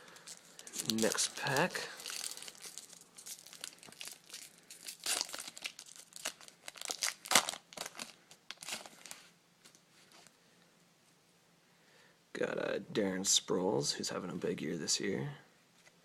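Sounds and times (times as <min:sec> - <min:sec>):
wrapper ripping: 0:00.0 - 0:09.3
card pack wrapper crinkling: 0:00.0 - 0:09.8.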